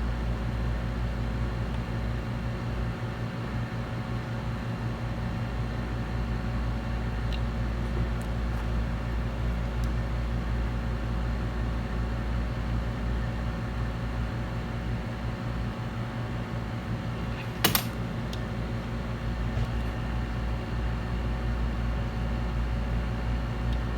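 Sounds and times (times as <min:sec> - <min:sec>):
sharp click: 0:17.4 - 0:18.4.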